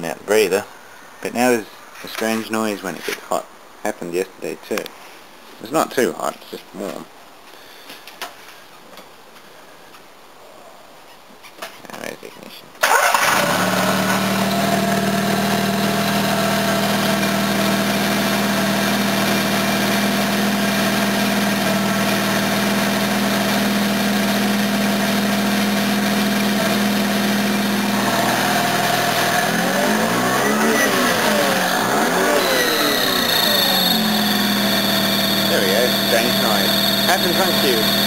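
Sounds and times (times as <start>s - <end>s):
rotary engine idling: 25.8s - 38.0s
warbling noise rising and falling: 28.0s - 37.4s.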